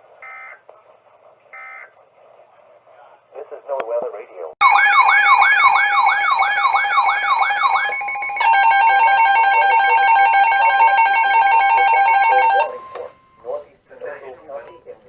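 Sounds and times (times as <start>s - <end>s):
rapid rising siren sweep: 4.6s - 12.9s
harsh pulsing alarm tone: 4.6s - 13.4s.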